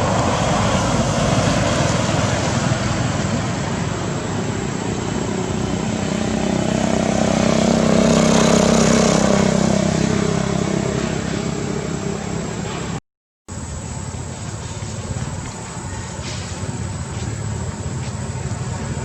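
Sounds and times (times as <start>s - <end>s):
vehicle engine passing by: 0.0s - 13.0s, 14.3s - 19.0s.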